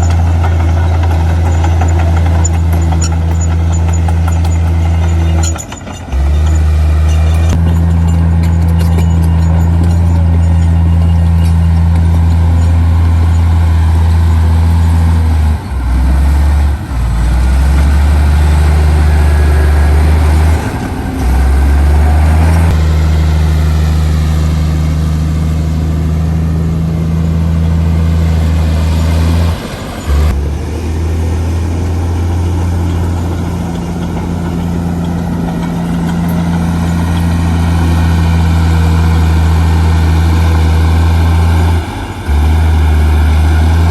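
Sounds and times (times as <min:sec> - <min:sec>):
heavy diesel engine droning: 0:00.0 - 0:43.9.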